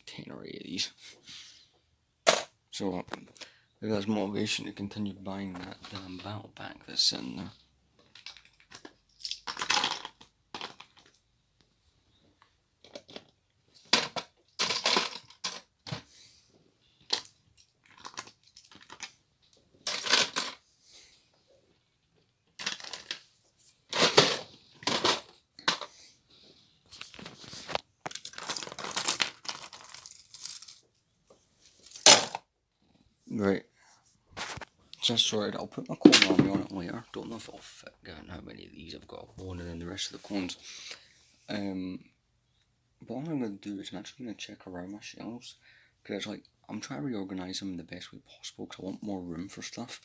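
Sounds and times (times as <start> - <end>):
plastic items rustling: 12.8 - 16.1, 17.0 - 20.6, 22.4 - 26.0, 26.8 - 31.0, 31.6 - 32.4, 34.4 - 35.3, 36.0 - 37.6.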